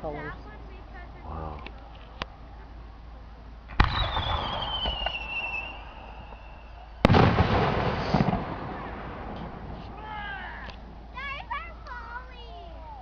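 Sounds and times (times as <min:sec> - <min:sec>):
firework bangs with rumble: 0:03.7 - 0:06.4, 0:07.0 - 0:10.0
firework whistle falling in pitch: 0:03.8 - 0:07.2.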